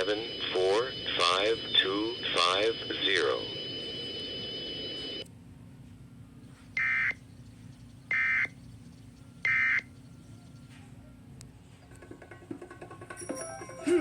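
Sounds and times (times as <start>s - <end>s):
steady electronic tone: 0.0s - 5.2s.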